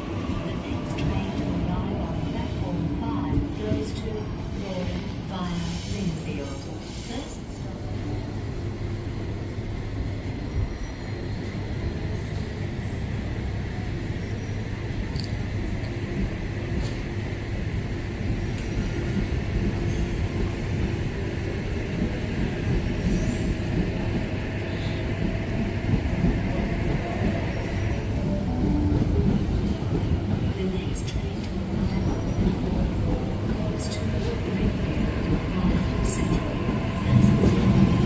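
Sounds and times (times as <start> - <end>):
electric train rumbling: 0.0 - 38.0.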